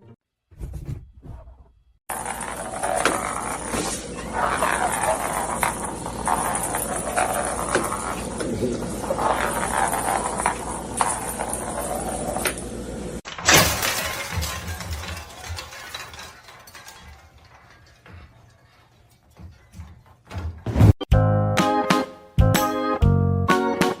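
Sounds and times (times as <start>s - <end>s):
loud crash: 13.4s - 18.0s
busy clattering: 13.5s - 20.6s.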